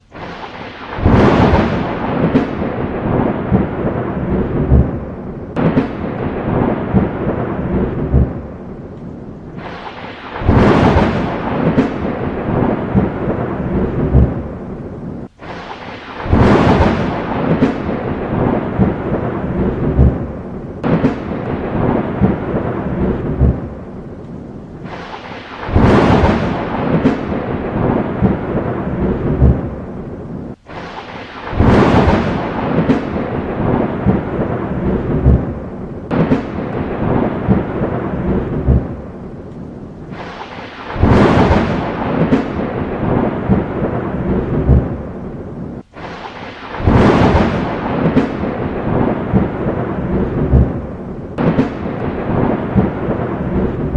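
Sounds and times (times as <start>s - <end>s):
steady rain: 0.0s - 53.9s
thunderclaps with rolling rumble: 0.0s - 53.9s.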